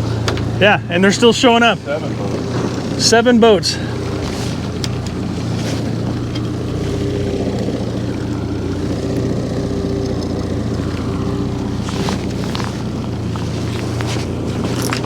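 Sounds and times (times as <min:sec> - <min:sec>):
boat engine running: 0:00.0 - 0:15.0.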